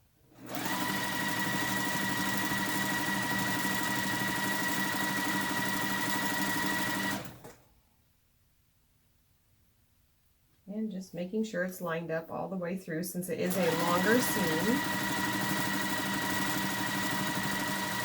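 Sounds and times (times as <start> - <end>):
electric sewing machine running: 0.3 - 7.6, 13.4 - 18.0.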